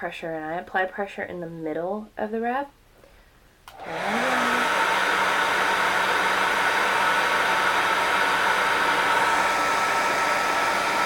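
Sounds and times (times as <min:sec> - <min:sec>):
hair dryer running: 0:03.7 - 0:11.0.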